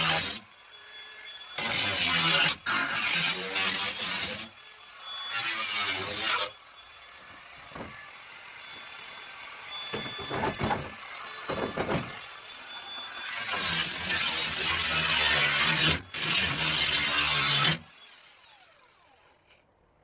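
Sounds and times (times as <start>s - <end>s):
power tool bursts: 9.7s - 19.5s
knocks and scrapes: 9.9s - 12.2s.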